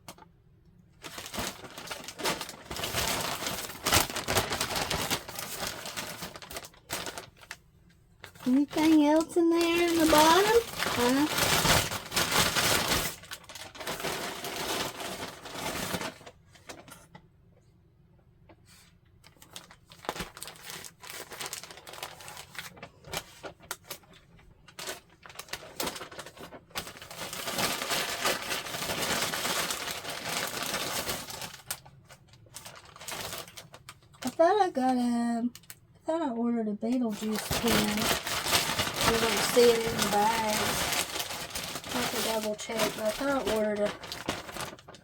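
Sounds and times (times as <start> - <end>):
plastic bag crinkling: 1.0 - 7.6, 8.2 - 17.0, 18.7 - 34.8, 35.4 - 35.8, 36.9 - 45.0
small crackles and clicks: 35.5 - 35.8, 36.9 - 45.0.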